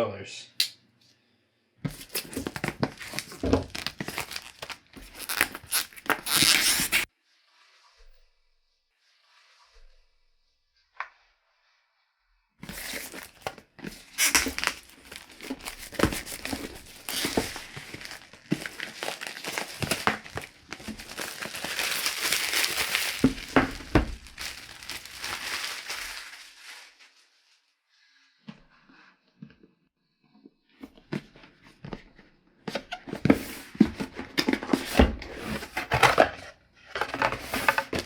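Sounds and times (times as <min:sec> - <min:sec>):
packaging crinkling and tearing: 0:01.9 - 0:07.1, 0:12.6 - 0:27.2.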